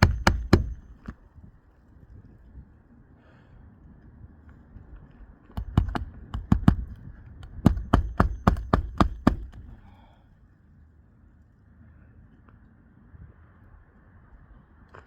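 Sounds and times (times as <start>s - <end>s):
hammer striking: 0.0s - 1.1s, 5.6s - 9.6s.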